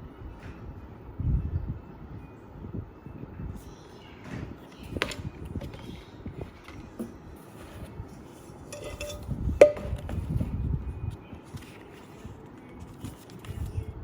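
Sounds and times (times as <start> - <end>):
metallic clink: 8.7 - 10.0
cookware knocking and rustling: 8.7 - 10.3.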